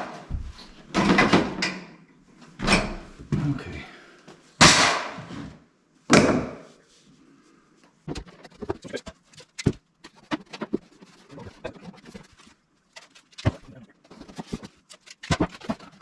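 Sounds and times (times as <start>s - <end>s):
heavy thuds: 0.3s - 1.6s.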